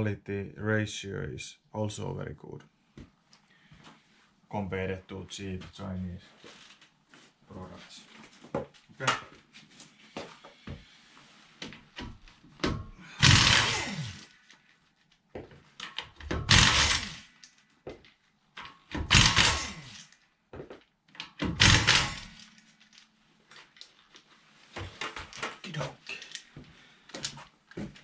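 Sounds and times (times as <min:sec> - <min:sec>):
pneumatic impact wrench bursts: 0:13.2 - 0:14.4, 0:16.3 - 0:17.4, 0:18.9 - 0:20.1, 0:21.4 - 0:22.5.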